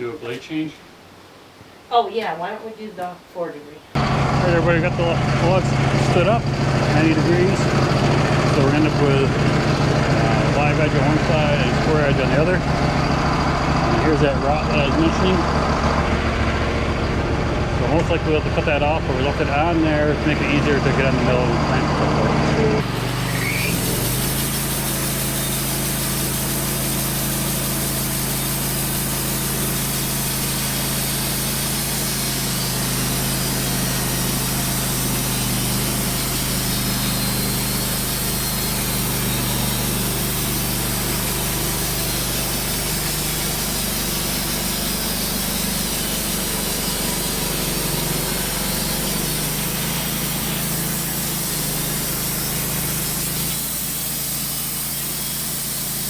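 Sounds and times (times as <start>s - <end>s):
sawmill engine droning: 4.0s - 56.0s
band blade cutting log: 22.8s - 56.0s.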